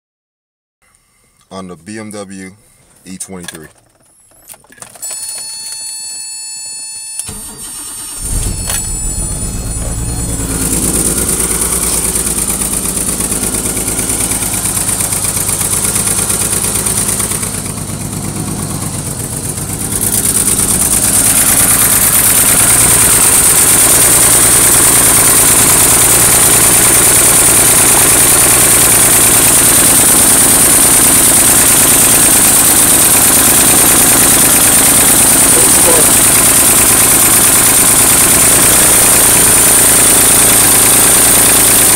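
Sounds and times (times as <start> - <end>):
car engine cranking and starting: 2.8 - 6.0, 7.2 - 41.9
warning tone: 5.0 - 30.2, 33.8 - 36.3
car engine rough idle: 7.3 - 41.9.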